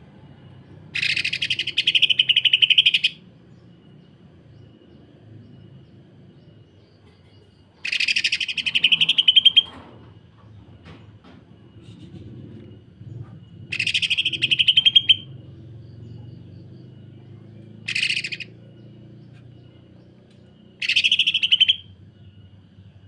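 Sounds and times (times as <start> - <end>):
bird harsh rattling call: 0.9 - 3.2, 7.8 - 9.8, 13.7 - 15.3, 17.8 - 18.6, 20.8 - 21.8.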